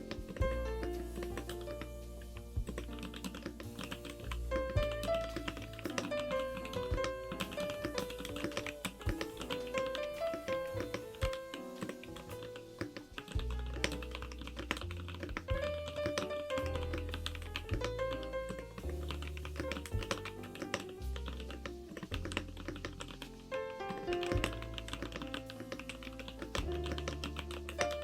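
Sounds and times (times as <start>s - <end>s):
background music with bass line: 0.0s - 11.5s, 12.1s - 28.0s
mechanical keyboard typing: 24.1s - 28.0s.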